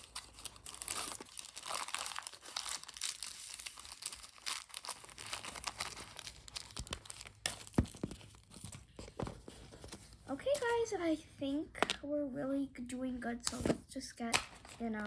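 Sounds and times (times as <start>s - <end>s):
packaging crinkling: 0.0s - 9.0s.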